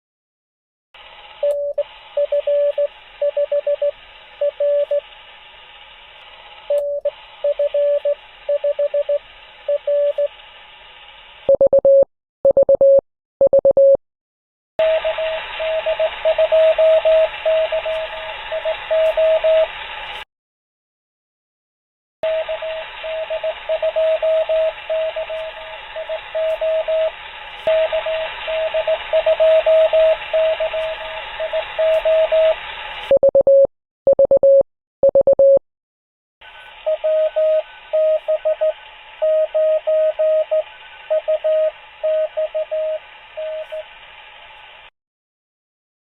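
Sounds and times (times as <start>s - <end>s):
morse code tone: 1.4s - 5.0s, 6.7s - 10.3s, 11.5s - 14.0s, 14.8s - 19.7s, 22.2s - 27.1s, 27.7s - 32.6s, 33.2s - 35.6s, 36.4s - 43.8s
radio band hiss: 14.8s - 20.2s, 22.3s - 33.1s, 36.4s - 39.2s, 40.5s - 44.8s.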